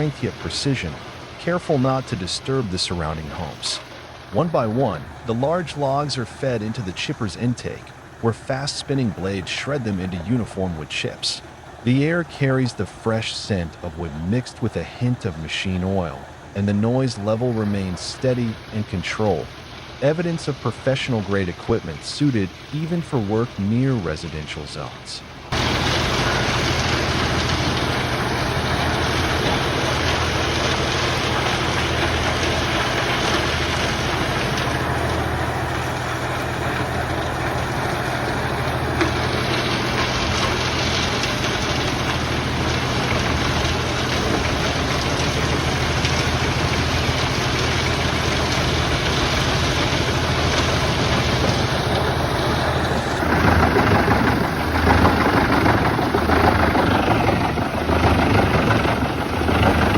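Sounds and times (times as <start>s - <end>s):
wood chipper running: 0.0s - 59.9s.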